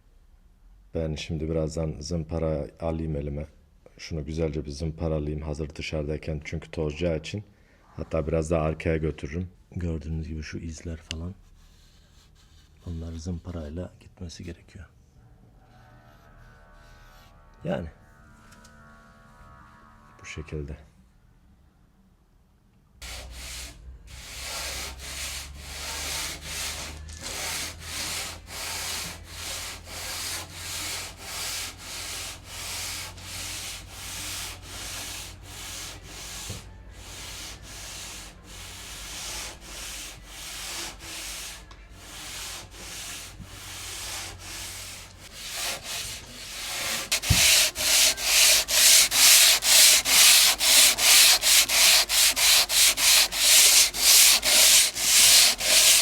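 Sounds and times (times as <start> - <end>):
sandpaper sanding plaster by hand: 23.0 - 56.0.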